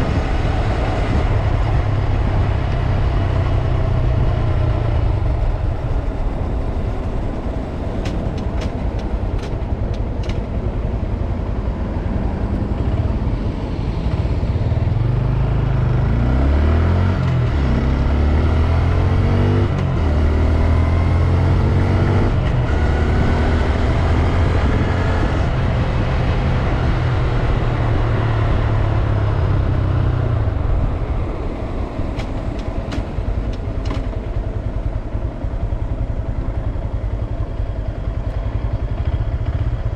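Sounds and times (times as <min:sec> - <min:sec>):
motorcycle engine revving: 0:14.5 - 0:39.9.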